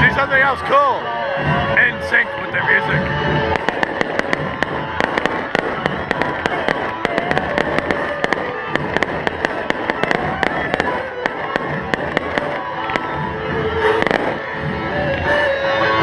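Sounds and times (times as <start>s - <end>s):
music playing: 0.0s - 16.0s
fireworks pops and crackles: 3.5s - 14.5s.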